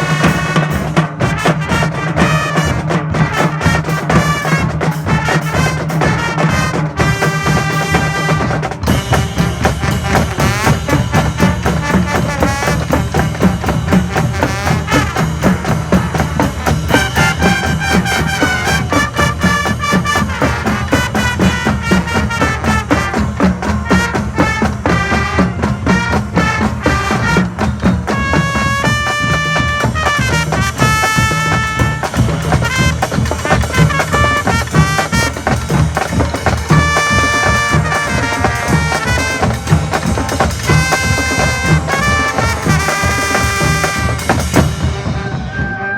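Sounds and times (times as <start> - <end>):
brass chords: 0.0 - 45.9
marching band drums: 0.0 - 45.9.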